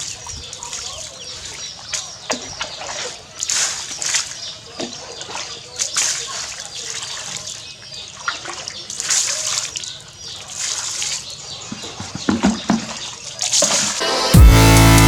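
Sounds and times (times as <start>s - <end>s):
water splashing and sloshing: 0.0s - 14.1s
loud electronic dance music: 14.0s - 15.0s.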